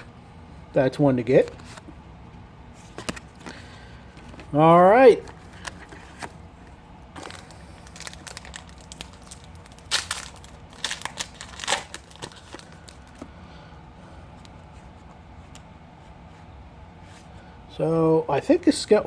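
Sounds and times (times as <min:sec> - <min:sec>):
wrapper crinkling and tearing: 0:07.1 - 0:13.2.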